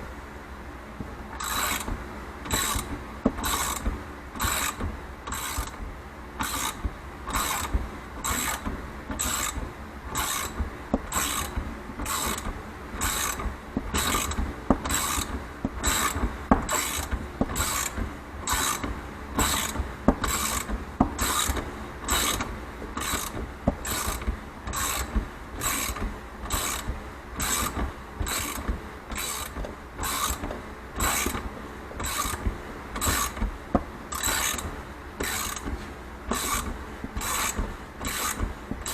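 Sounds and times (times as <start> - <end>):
ratchet clicking: 2.5 - 5.8, 6.4 - 9.6, 13.0 - 30.4, 31.0 - 31.4, 32.0 - 32.4, 34.1 - 35.7, 36.3 - 38.9.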